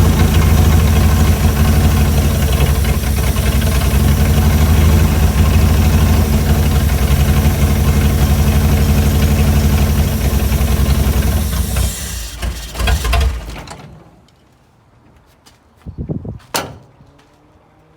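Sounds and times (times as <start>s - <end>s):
car engine idling: 0.0s - 13.6s.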